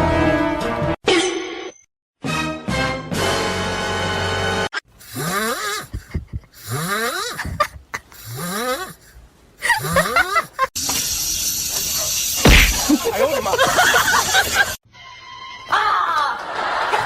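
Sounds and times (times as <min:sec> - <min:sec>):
music: 0:00.0 - 0:01.0, 0:02.2 - 0:04.7, 0:14.8 - 0:15.8.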